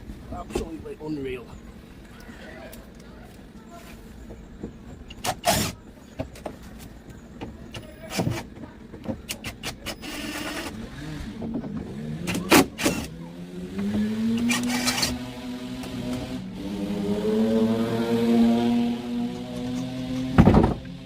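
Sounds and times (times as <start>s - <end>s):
cordless drill motor whining: 14.4s - 15.2s.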